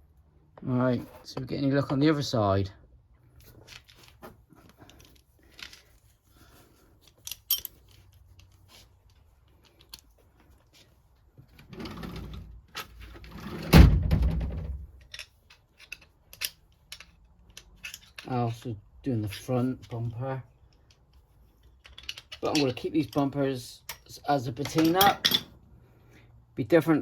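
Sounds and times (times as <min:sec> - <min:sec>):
tools and parts clinking: 0:03.3 - 0:13.4, 0:14.8 - 0:25.6.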